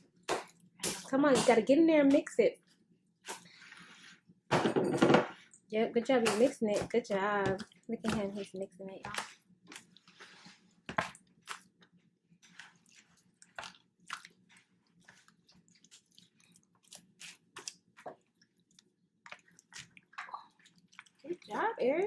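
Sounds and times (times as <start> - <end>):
slime squelching and popping: 6.2 - 21.7.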